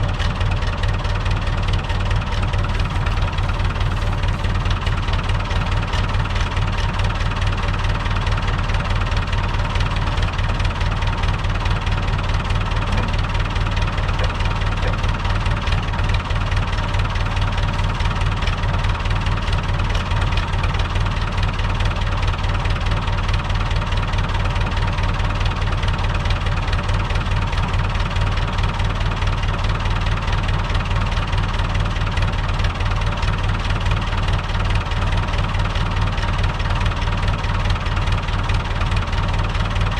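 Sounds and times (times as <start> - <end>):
tractor diesel engine idling: 0.0 - 39.9.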